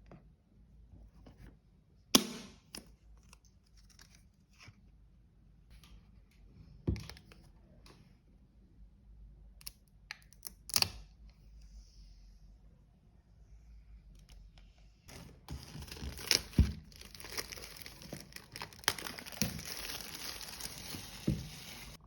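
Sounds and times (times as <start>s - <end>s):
packaging rustling: 15.1s - 22.0s.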